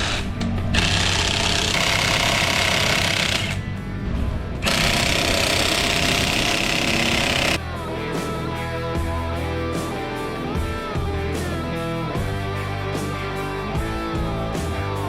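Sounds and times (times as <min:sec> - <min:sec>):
impact wrench hammering: 0:00.0 - 0:03.6, 0:04.6 - 0:07.6
background music: 0:00.0 - 0:15.0.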